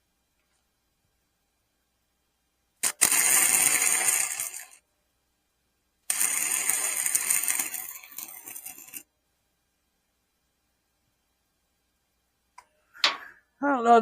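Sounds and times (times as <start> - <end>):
arc welder crackling and buzzing: 2.8 - 4.8, 6.0 - 9.1.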